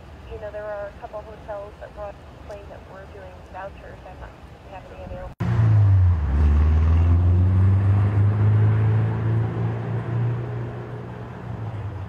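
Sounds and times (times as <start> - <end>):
vehicle engine droning: 5.2 - 12.0.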